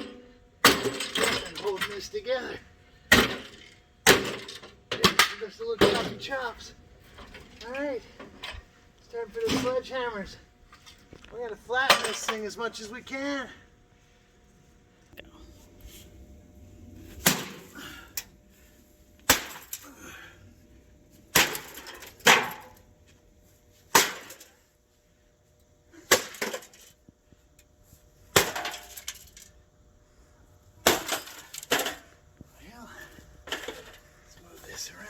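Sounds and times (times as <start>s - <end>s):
rattle of breaking parts: 0.0s - 2.2s, 3.1s - 6.3s, 11.9s - 12.4s, 19.3s - 19.9s, 21.4s - 22.8s, 24.0s - 24.6s, 26.1s - 27.0s, 28.4s - 29.5s, 30.8s - 32.2s, 33.4s - 34.0s
sledgehammer smashing metal: 23.9s - 24.5s, 28.4s - 29.1s, 30.8s - 32.1s.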